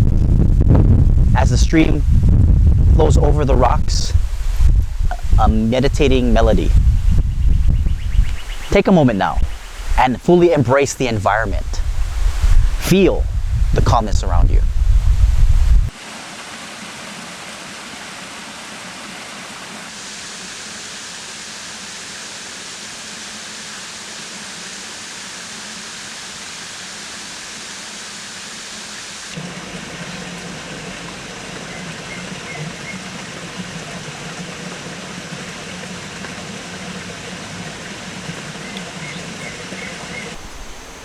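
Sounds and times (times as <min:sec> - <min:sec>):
stream flowing over rocks: 0:15.9 - 0:41.0.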